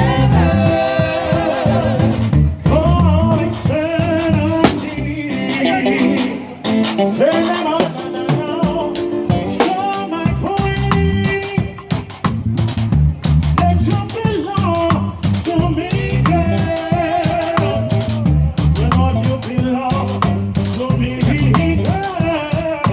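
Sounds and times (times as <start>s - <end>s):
heavy bass line: 0.0s - 7.3s, 10.1s - 22.9s
live ska band playing: 0.0s - 22.9s.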